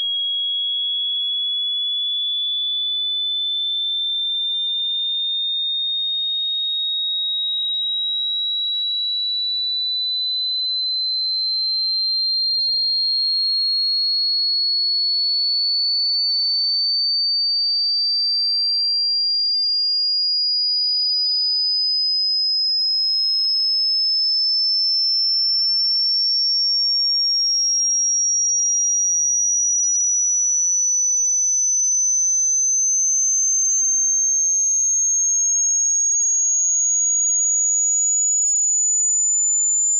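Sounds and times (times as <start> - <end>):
rising sine tone sweep: 29.8 - 35.7.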